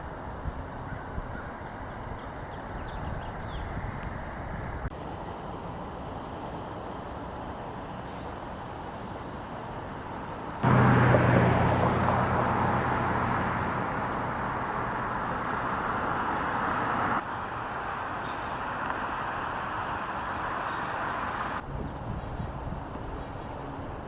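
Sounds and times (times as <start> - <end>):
street traffic: 0.0 - 24.0
nearby vehicle engine hum: 10.6 - 17.3.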